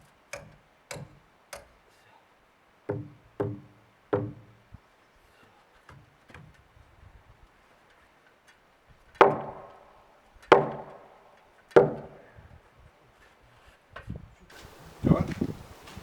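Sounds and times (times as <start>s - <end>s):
hand tool knocking on timber: 2.9s - 4.6s, 10.5s - 11.0s, 11.7s - 12.2s.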